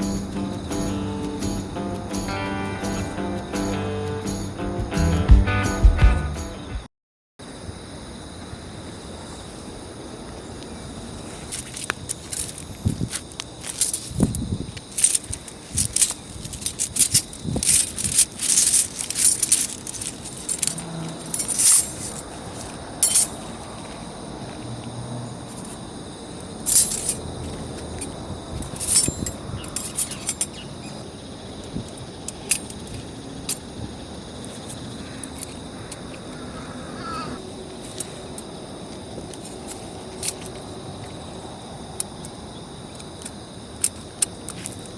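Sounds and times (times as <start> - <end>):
metal bars clinking and rattling: 13.6 - 14.3, 14.9 - 23.4, 26.7 - 27.2, 28.0 - 30.6.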